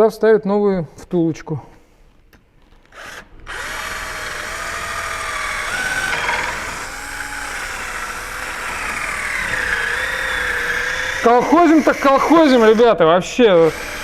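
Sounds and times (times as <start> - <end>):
electric drill whining: 2.9 - 14.0.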